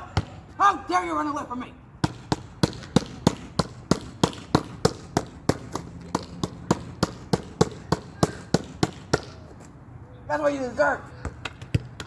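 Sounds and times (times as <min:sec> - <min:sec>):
basketball being hit: 0:02.0 - 0:09.4.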